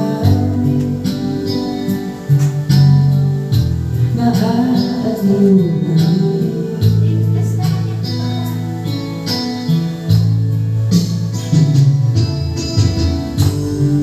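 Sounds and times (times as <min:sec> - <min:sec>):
held bass notes: 0:00.0 - 0:14.0
strummed guitar chords: 0:00.0 - 0:14.0.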